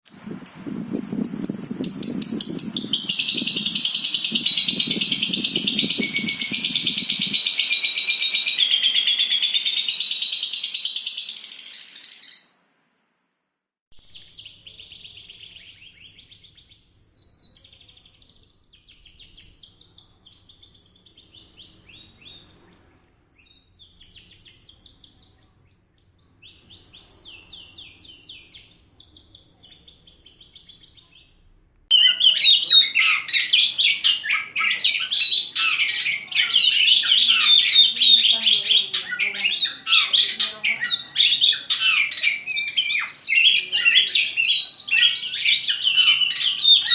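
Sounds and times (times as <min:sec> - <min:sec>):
songbirds chirping and trilling: 0:00.5 - 0:12.4, 0:14.0 - 0:46.9.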